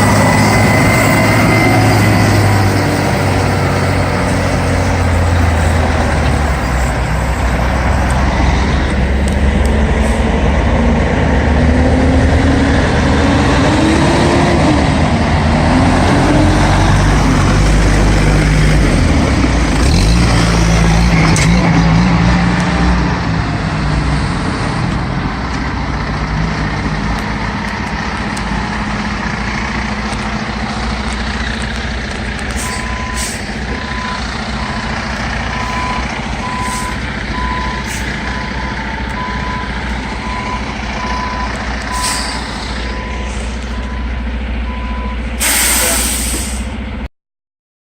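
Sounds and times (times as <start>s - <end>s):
reversing alarm beeping: 0.0s - 7.6s, 32.6s - 46.2s
diesel engine revving: 0.0s - 47.1s.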